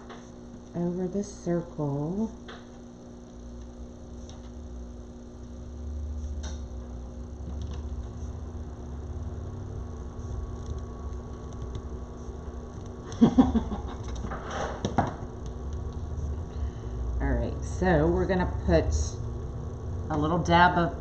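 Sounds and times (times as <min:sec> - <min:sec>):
electrical hum: 0:00.0 - 0:21.0
low rumble: 0:15.3 - 0:21.0.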